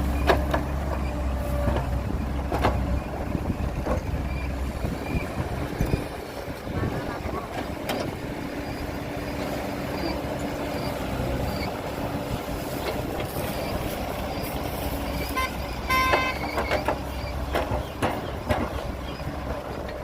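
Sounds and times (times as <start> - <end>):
heavy diesel machinery running: 0.0 - 20.0
knocks: 16.0 - 18.8.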